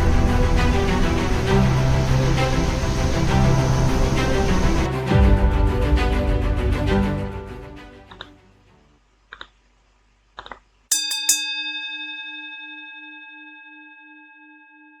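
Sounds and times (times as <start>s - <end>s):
background music: 0.0s - 9.1s
bell-like chime ringing: 10.9s - 15.0s.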